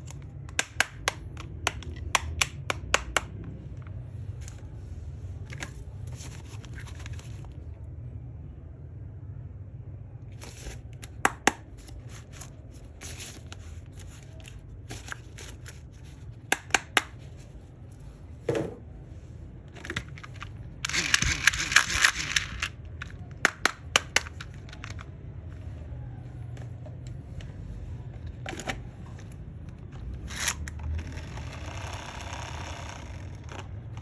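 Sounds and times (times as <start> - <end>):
plastic clicks and taps: 0.0 - 3.9.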